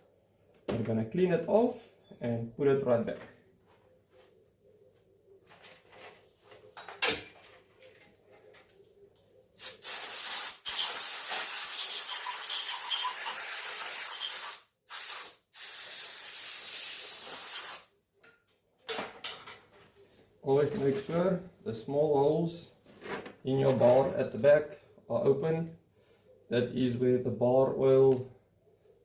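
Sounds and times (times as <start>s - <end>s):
pressurised spray hissing: 9.6s - 17.8s.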